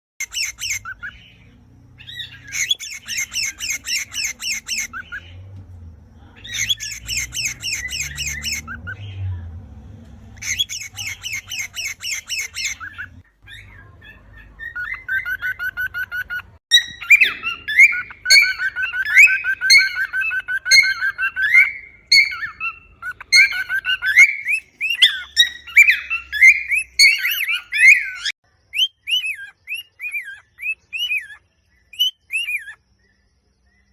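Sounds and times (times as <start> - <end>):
bird harsh chattering: 0.2 - 1.4, 2.0 - 5.3, 6.4 - 9.0, 10.4 - 28.3
bird whistling sliding notes: 16.7 - 28.3.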